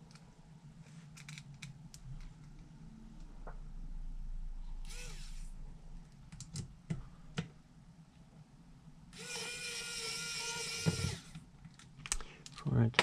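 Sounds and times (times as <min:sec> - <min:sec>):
small parts clicking: 0:01.2 - 0:02.6
small power tool motor whirring: 0:04.8 - 0:05.5, 0:09.2 - 0:11.4.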